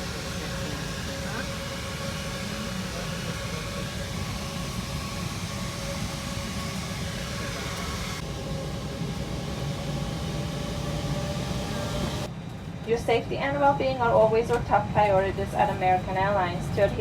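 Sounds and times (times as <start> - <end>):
aircraft cabin drone and hiss: 0.0 - 12.3
steady whining tones: 0.0 - 17.0.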